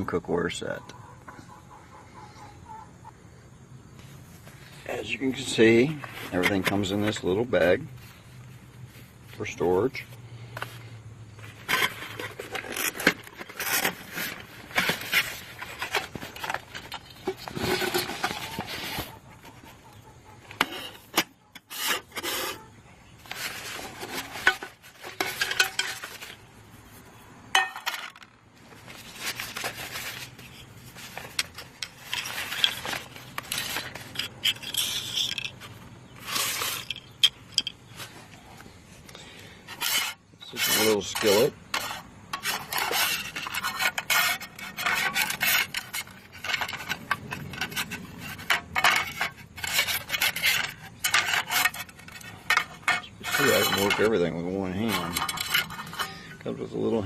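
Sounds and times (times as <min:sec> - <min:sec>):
nylon bag rustling and scraping: 0:04.4 - 0:09.6, 0:11.4 - 0:19.2, 0:20.6 - 0:28.0, 0:28.6 - 0:38.3, 0:39.7 - 0:56.4
metal pots clinking: 0:24.0 - 0:26.3, 0:27.5 - 0:28.2.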